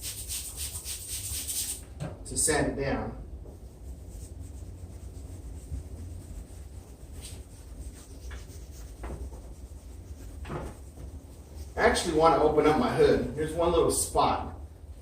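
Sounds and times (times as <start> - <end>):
sanding pad rubbing plastic: 0.0 - 1.8
low steady rumble: 1.8 - 15.0.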